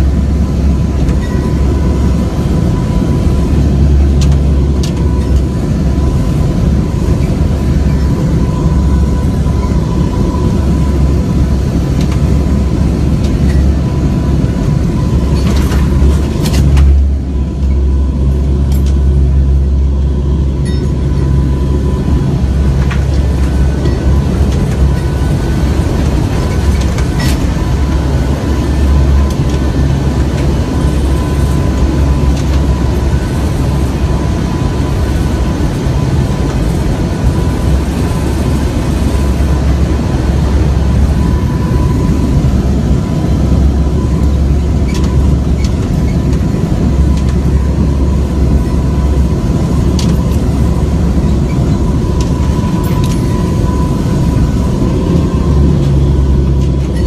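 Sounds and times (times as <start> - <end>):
aircraft cabin rumble: 0.0 - 57.0
thin high tone: 19.1 - 25.7.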